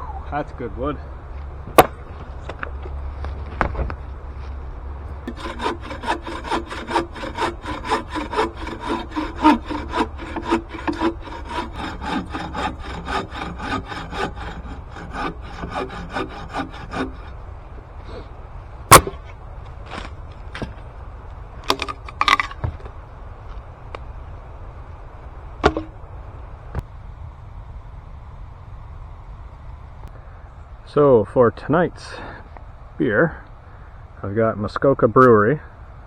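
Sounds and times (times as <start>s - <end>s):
hand saw cutting wood: 5.3s - 17.4s.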